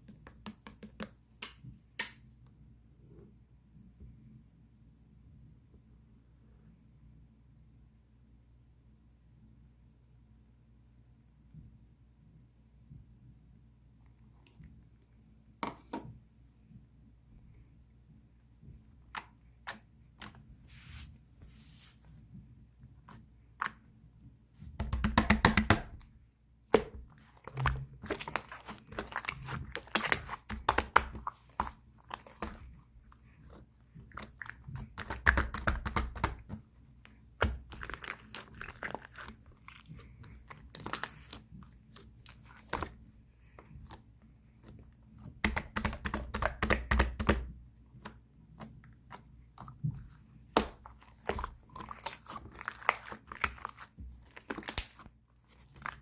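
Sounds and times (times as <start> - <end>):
crunching and crinkling: 26.8 - 45.4, 47.9 - 56.0.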